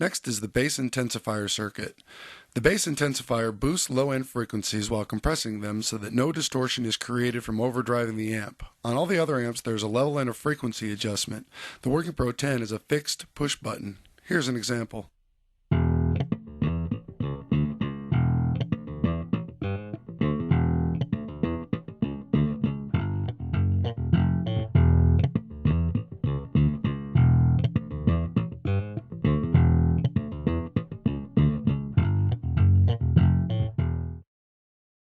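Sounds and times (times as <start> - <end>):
electric bass guitar plucked: 15.7 - 34.2.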